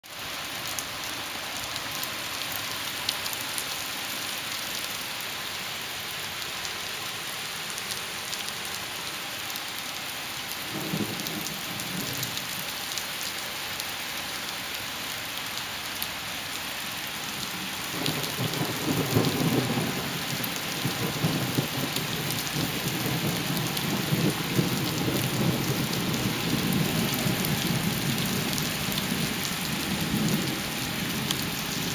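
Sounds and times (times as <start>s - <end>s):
heavy rain falling: 0.0s - 31.9s
thunder rumbling: 17.9s - 31.9s.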